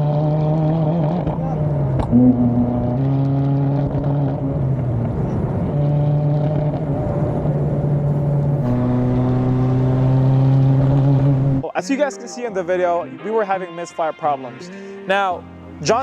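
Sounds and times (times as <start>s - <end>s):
car engine running under load: 0.0s - 11.6s.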